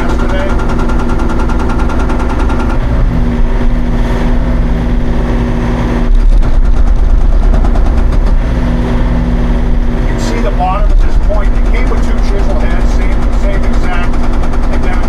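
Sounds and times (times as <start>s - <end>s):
hydraulic hammer pounding rock: 0.0s - 3.1s, 6.0s - 8.6s, 10.3s - 15.0s
diesel engine running under load: 0.0s - 15.0s.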